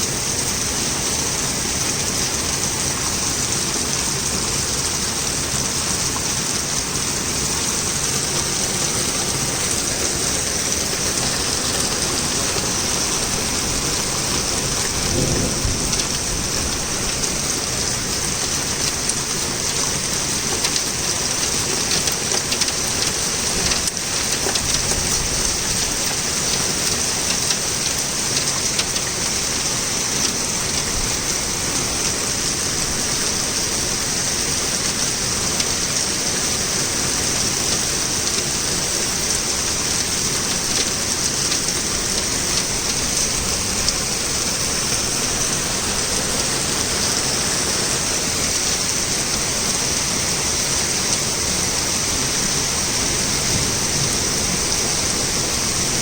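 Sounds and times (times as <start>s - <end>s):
torrential rain: 0.0s - 56.0s
low rumble of thunder: 8.4s - 21.0s, 39.2s - 47.4s, 52.9s - 56.0s.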